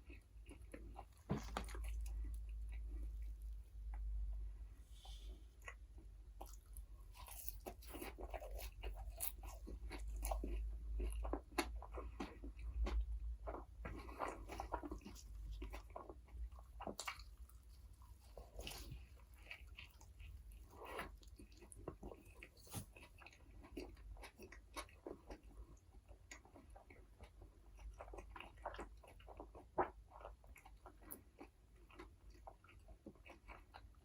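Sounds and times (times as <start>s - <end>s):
crunchy bites and chewing: 0.0s - 4.1s, 5.6s - 25.6s.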